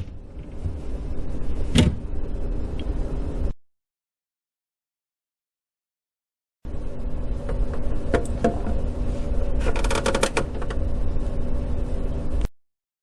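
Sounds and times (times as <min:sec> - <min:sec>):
steady low hum: 0:00.0 - 0:03.6, 0:06.6 - 0:12.5
refrigerator shelf clicking and rattling: 0:09.6 - 0:10.8.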